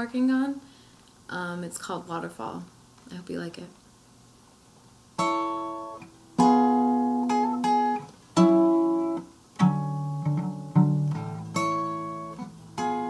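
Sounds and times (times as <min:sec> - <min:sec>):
acoustic guitar chords ringing: 0:05.2 - 0:13.0.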